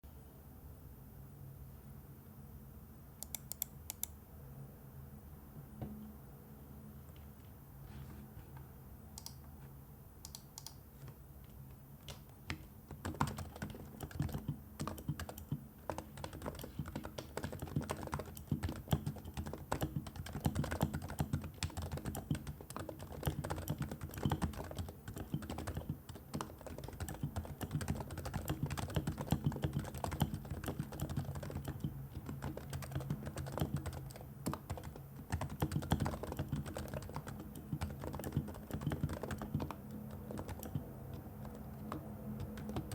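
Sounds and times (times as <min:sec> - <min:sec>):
typing on keyboard: 0:12.0 - 0:42.9.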